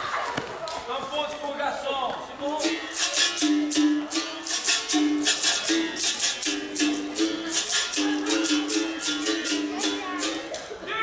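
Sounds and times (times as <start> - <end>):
shaker rattling: 2.6 - 10.6
berimbau twanging notes: 2.6 - 10.7.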